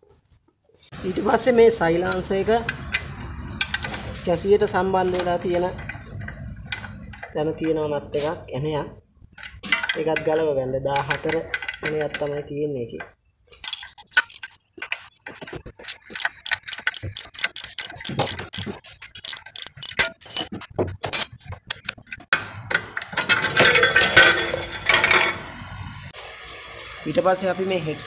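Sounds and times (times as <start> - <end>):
metal tools clinking: 2.1 - 7.9, 9.4 - 22.2, 23.0 - 25.4
ratchet spanner clicking: 15.8 - 20.5.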